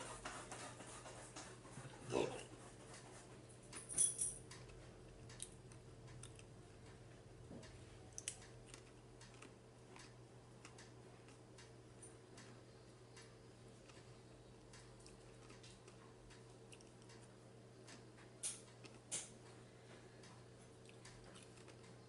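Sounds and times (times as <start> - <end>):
wet chewing clicks: 4.5 - 7.0, 8.1 - 12.6, 13.2 - 19.3, 20.2 - 22.0
crisp crunches of chewing: 8.2 - 11.4, 13.8 - 17.3, 20.7 - 22.0.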